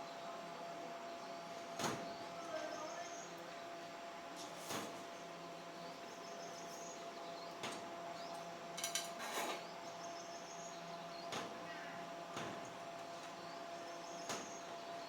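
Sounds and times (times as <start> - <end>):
tools and small parts clinking: 8.8 - 9.6.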